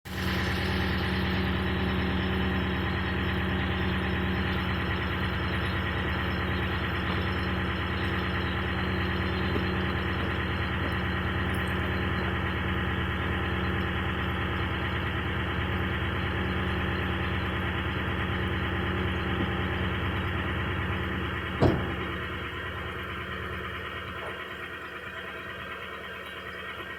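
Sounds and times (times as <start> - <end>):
pickup truck engine running: 0.0 - 26.9
sharp pop: 21.6 - 22.2.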